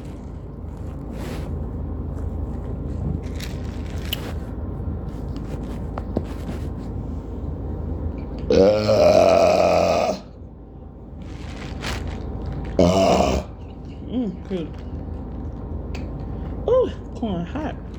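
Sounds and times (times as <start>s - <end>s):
low background hum: 0.0s - 17.9s
person burping: 8.5s - 10.3s, 12.8s - 13.6s.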